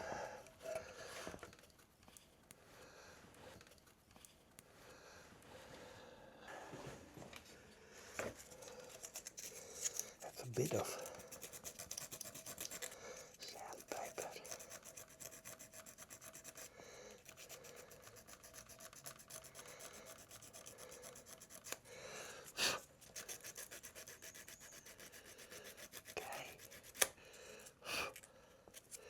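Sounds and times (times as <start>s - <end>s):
sandpaper rubbing: 9.0s - 13.0s, 13.8s - 16.7s, 17.3s - 21.9s, 22.5s - 27.1s.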